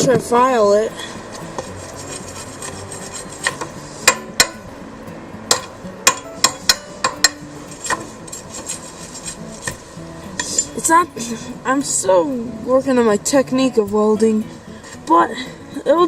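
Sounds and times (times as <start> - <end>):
file rasping on weld: 1.0 - 4.6, 7.7 - 9.8
metallic strikes with ringing: 3.4 - 4.6, 5.5 - 8.0.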